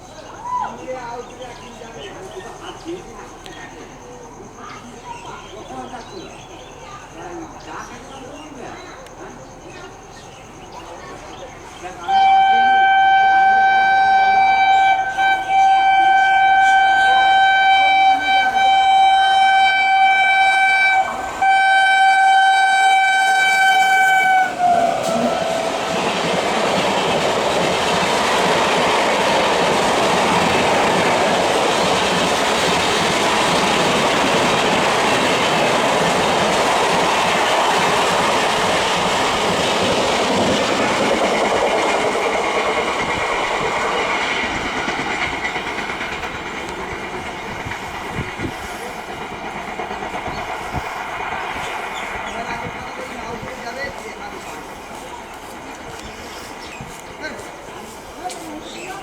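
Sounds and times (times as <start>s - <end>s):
train coaches rolling past: 0.0s - 59.0s
locomotive horn long tone: 12.0s - 26.3s.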